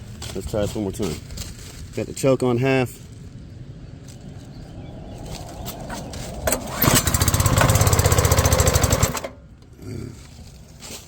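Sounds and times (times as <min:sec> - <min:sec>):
small gasoline engine running: 0:06.5 - 0:09.4.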